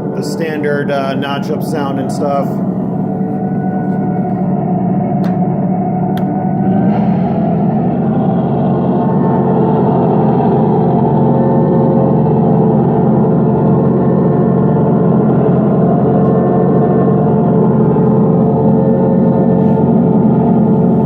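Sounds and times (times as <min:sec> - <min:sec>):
model locomotive engine hum: 0:07.9 - 0:21.0.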